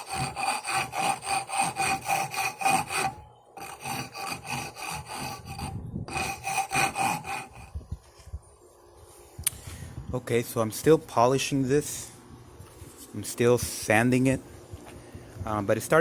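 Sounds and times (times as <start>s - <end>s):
hand sanding wood: 0.0s - 7.7s.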